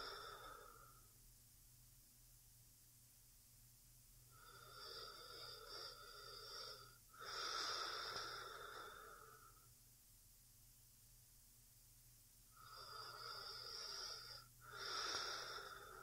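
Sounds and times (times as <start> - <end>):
woman breathing slowly: 0.0 - 1.2, 4.3 - 9.8, 12.5 - 16.0.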